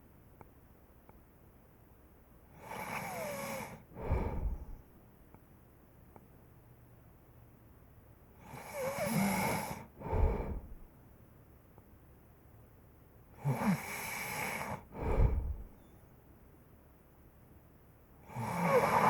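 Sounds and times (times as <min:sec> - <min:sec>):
person snoring: 0:02.6 - 0:04.8, 0:08.5 - 0:10.8, 0:18.3 - 0:19.0.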